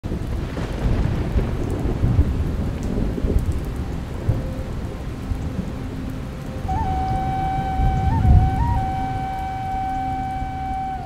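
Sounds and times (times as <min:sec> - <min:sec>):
rain falling: 0:00.0 - 0:11.0
rumble of thunder: 0:00.1 - 0:06.0.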